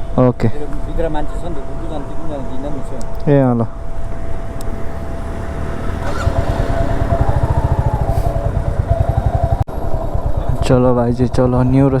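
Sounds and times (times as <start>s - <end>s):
motorcycle engine running: 3.8s - 12.0s.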